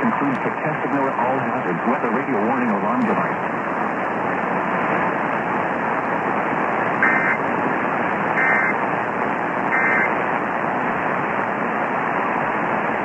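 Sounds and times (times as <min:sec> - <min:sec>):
radio static hiss: 0:00.0 - 0:13.0
warbling data bursts: 0:07.0 - 0:07.4, 0:08.3 - 0:08.8, 0:09.7 - 0:10.1.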